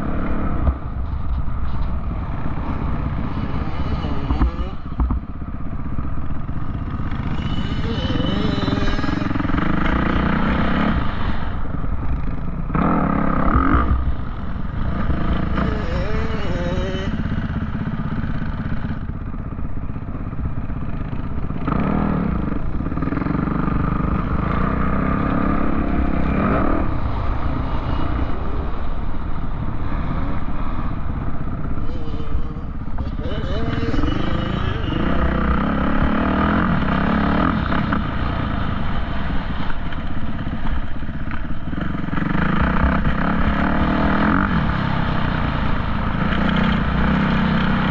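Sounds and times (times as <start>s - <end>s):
off-road vehicle engine revving: 6.8s - 11.6s, 12.7s - 19.0s, 31.6s - 38.4s.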